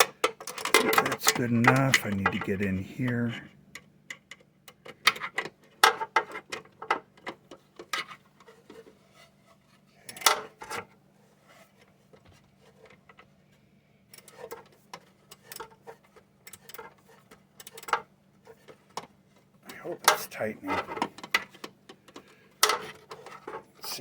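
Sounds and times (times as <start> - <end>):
faint low hum: 0.6 - 5.0.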